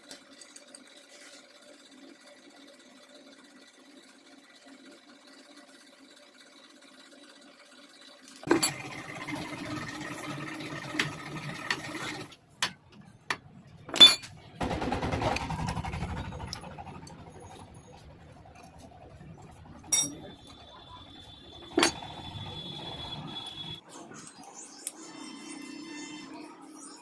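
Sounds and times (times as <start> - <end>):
small power tool running: 4.5 - 12.2.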